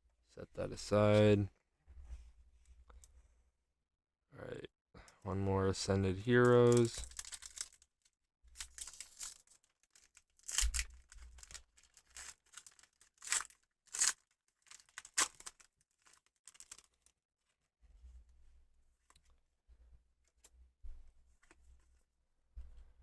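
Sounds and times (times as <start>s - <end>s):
foil wrapper tearing and crinkling: 6.6s - 17.1s.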